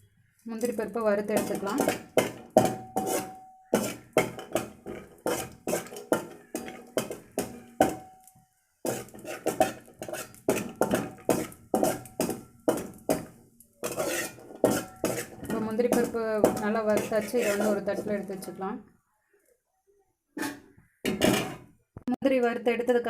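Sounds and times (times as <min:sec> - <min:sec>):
spoon scraping nuts in a pan: 0:00.5 - 0:08.0, 0:08.8 - 0:18.6, 0:20.4 - 0:21.6
spoon knocking against a pan: 0:00.7 - 0:08.2, 0:08.9 - 0:18.5.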